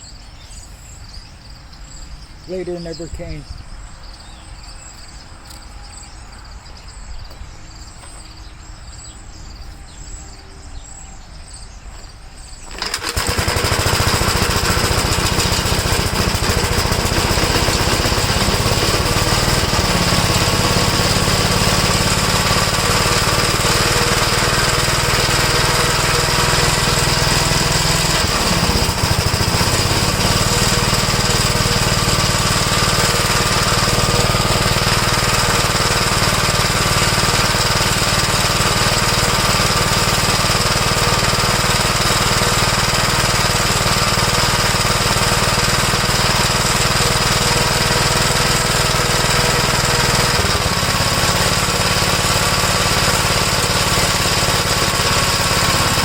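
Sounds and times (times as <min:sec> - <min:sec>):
faint crickets chirping: 0:00.0 - 0:12.7
single-cylinder tractor engine running: 0:12.6 - 0:56.0.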